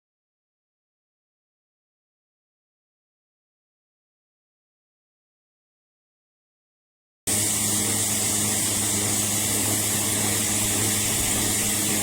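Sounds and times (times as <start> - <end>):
orbital sander running: 7.3 - 12.0.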